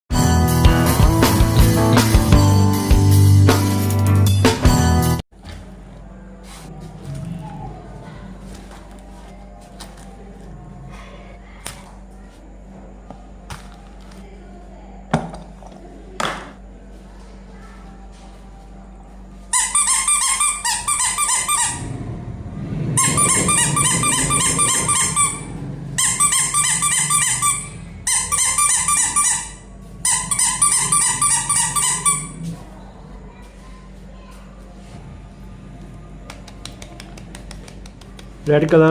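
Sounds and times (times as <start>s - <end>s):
toy squeaking: 19.5s - 21.9s, 23.0s - 32.4s.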